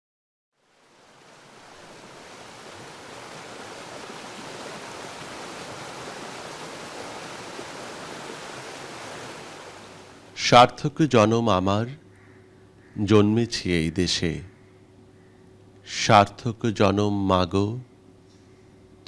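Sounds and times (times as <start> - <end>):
waterfall rushing: 0.6 - 10.3.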